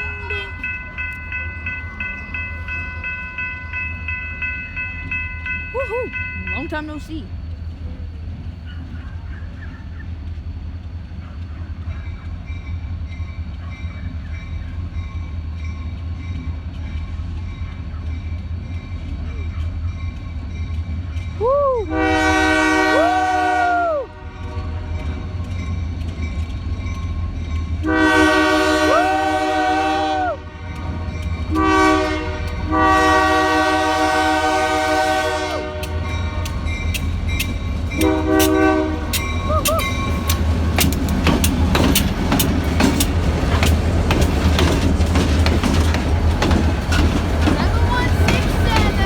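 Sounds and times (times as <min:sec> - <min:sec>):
locomotive air horn blasts: 0:21.9 - 0:25.3, 0:27.8 - 0:36.8, 0:37.4 - 0:40.1
train wheels clacking over rail joints: 0:30.8 - 0:49.0.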